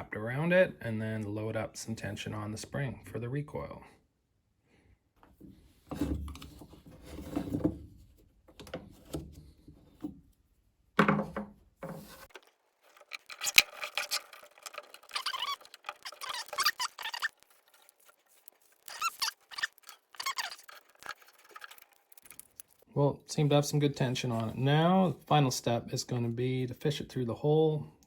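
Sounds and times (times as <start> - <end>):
recoil starter scraping and rattling: 12.1 - 22.8.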